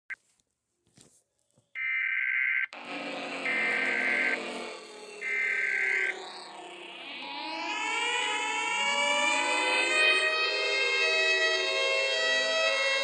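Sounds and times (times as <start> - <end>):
two-tone digital data squawk: 1.8 - 4.6, 5.2 - 7.3
noisy low drone: 2.8 - 12.8.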